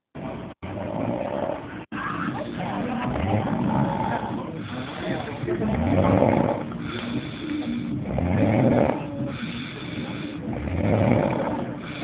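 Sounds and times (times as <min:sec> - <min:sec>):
quiet breathing: 0:00.7 - 0:12.0
person snoring loudly: 0:02.5 - 0:12.0.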